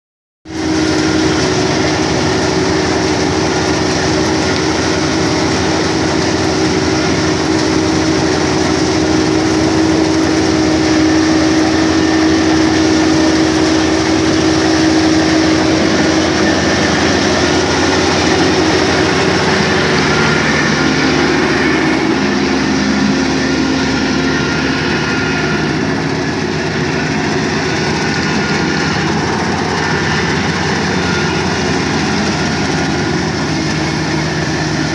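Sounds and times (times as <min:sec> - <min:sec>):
combine harvester engine droning: 0:00.5 - 0:34.9.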